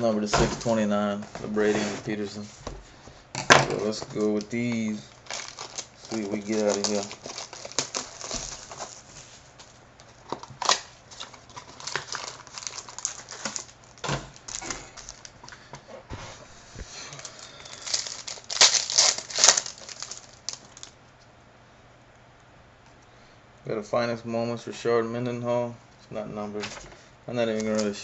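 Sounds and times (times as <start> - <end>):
wrapper crinkling and tearing: 3.8 - 15.5, 16.9 - 21.0, 27.4 - 28.0.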